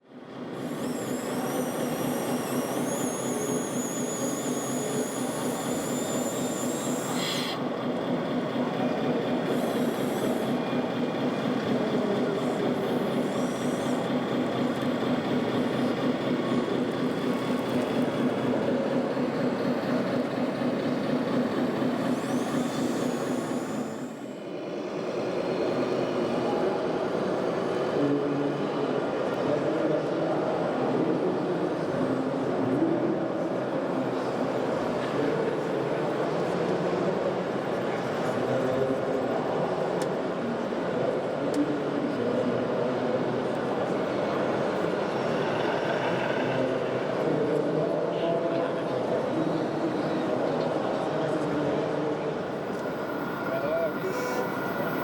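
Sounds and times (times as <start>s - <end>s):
steady engine-like hum: 0.0s - 55.0s
electric motor whines: 0.6s - 7.6s, 21.8s - 24.2s
hall noise: 50.7s - 55.0s.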